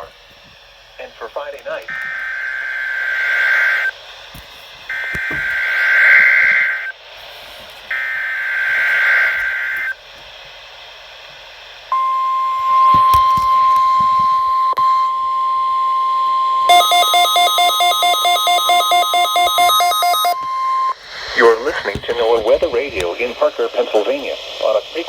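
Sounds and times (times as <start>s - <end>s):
buzzing data burst: 1.9s - 4.0s, 4.9s - 7.0s, 7.9s - 10.0s, 11.9s - 21.8s
rapid alarm beeping: 1.9s - 4.0s, 4.9s - 7.0s, 7.9s - 10.0s, 11.9s - 22.2s.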